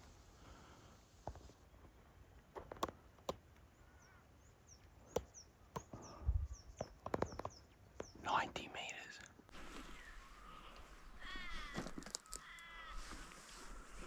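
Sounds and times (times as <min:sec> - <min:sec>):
small bird chirping: 0:02.8 - 0:09.2
footsteps crunching on dry sticks: 0:11.1 - 0:14.0.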